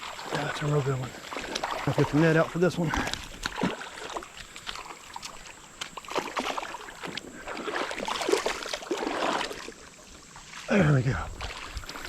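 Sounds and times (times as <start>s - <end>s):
creek water splashing: 0.0s - 12.0s.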